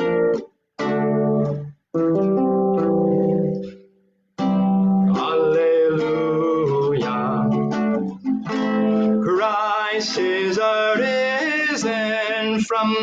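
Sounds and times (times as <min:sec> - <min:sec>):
acoustic guitar strumming chords: 0:00.0 - 0:13.0.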